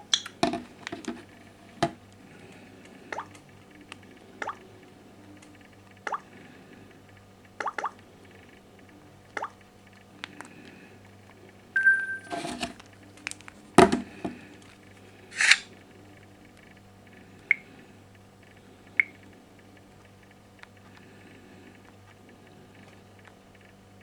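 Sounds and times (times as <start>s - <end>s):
low steady hum: 0.0s - 24.0s
phone handling clicks and knocks: 0.4s - 2.0s
short beep: 11.8s - 12.6s.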